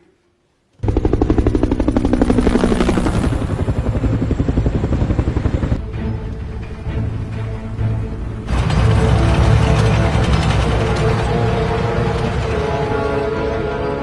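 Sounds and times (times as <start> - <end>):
helicopter rotor chopping: 0.8 - 5.8, 8.4 - 13.9.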